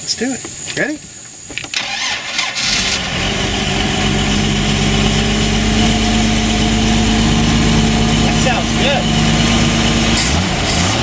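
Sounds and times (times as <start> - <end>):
engine starter cranking: 1.6 - 11.0
boat engine idling: 2.7 - 11.0.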